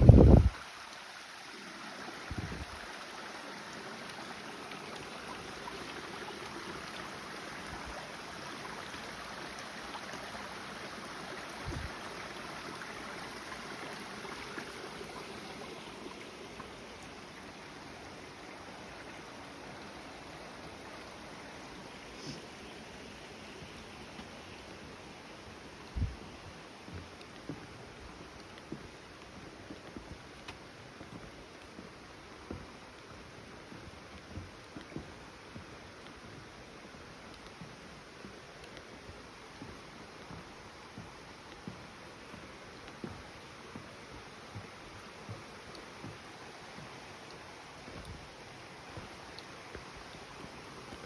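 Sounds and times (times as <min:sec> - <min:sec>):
stream water rushing: 0:00.0 - 0:51.0
soft low thumps: 0:25.8 - 0:27.7.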